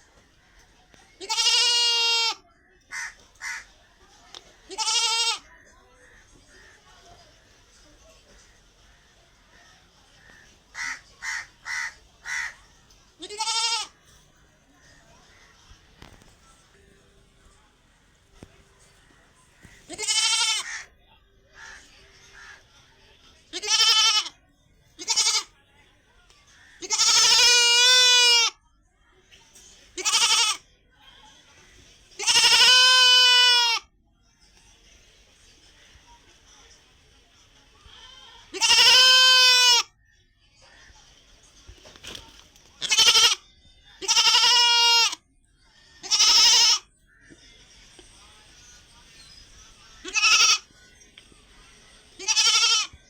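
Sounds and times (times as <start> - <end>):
goat bleating: 1.2 - 2.4, 4.7 - 5.5, 13.2 - 14.0, 19.9 - 20.9, 23.5 - 24.4, 25.0 - 25.5, 26.8 - 28.6, 30.0 - 30.6, 32.2 - 33.8, 37.9 - 39.9, 42.8 - 43.4, 44.0 - 45.2, 46.0 - 46.9, 50.0 - 50.7, 52.2 - 53.0.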